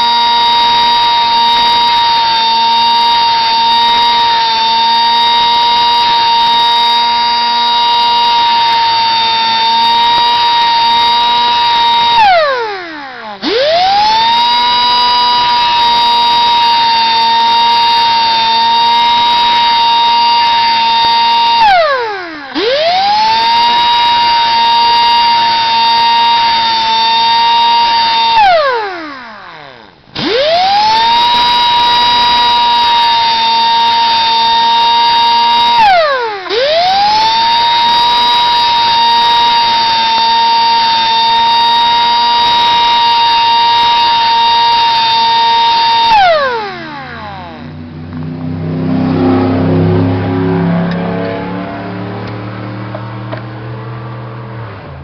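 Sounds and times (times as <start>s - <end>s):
electric grinder whining: 0.0s - 55.0s
lower rough sound: 46.4s - 55.0s.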